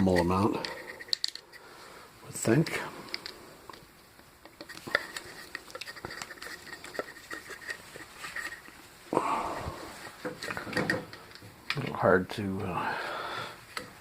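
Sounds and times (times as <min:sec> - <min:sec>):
tools clicking and scraping metal: 0:00.0 - 0:01.7, 0:02.6 - 0:08.8, 0:09.9 - 0:11.8.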